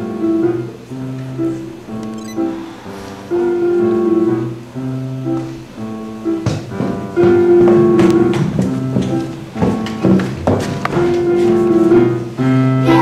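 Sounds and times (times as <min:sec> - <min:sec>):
instrumental melody of held notes: 0:02.0 - 0:02.6.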